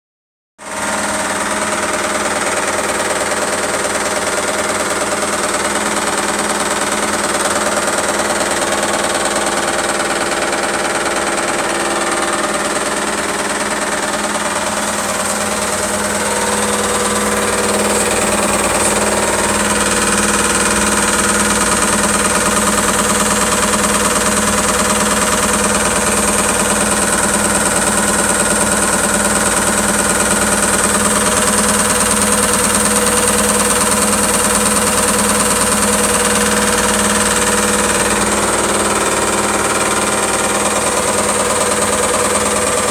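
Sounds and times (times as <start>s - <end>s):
spinning drum hum: 0.7s - 42.9s.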